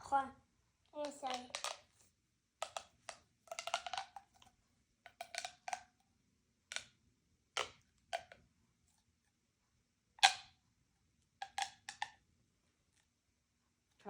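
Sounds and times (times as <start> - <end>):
plastic pop tube pops and clicks: 1.0 - 1.9, 2.6 - 6.0, 6.7 - 8.4, 10.2 - 10.6, 11.4 - 12.2.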